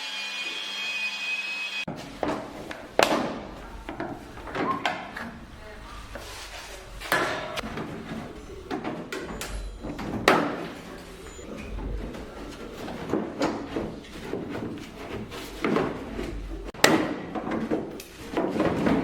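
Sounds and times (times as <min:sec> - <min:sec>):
knocks and clanks of bodywork: 0:01.9 - 0:05.4, 0:07.0 - 0:11.0, 0:11.6 - 0:19.0.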